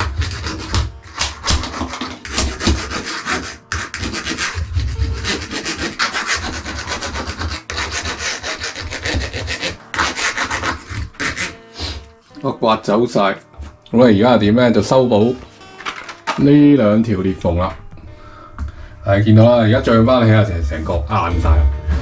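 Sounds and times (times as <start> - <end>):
foam being scraped off: 0.0 - 12.1.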